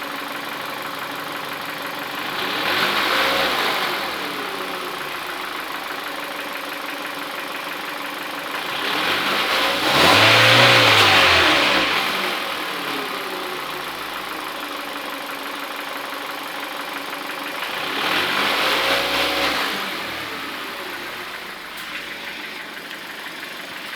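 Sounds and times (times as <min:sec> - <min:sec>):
knocking engine idling: 0:00.0 - 0:09.0, 0:12.1 - 0:18.5, 0:20.0 - 0:23.9
engine revving: 0:01.6 - 0:06.1, 0:08.5 - 0:14.7, 0:17.6 - 0:23.5.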